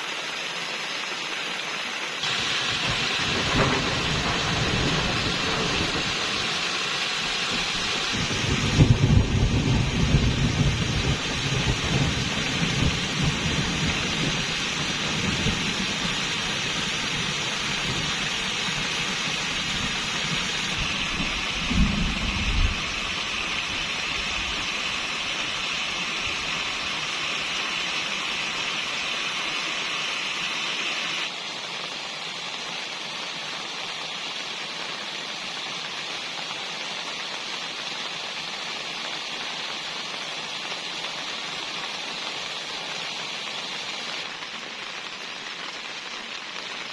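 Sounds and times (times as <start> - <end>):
heavy rain: 0.0 - 46.9
thunder rumbling: 2.7 - 6.6, 7.4 - 16.1, 20.8 - 23.3.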